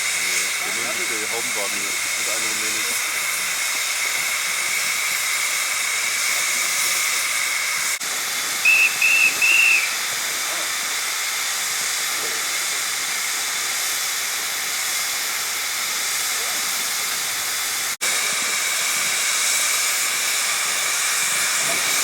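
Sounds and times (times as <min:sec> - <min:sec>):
steam locomotive hissing: 0:00.0 - 0:22.0
short high whistle toots: 0:08.6 - 0:10.0.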